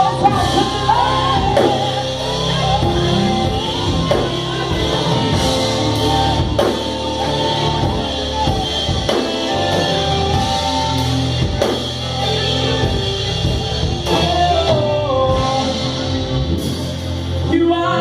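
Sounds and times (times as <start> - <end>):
worship band playing: 0.0 - 18.0
drums striking slow beat: 0.2 - 14.7.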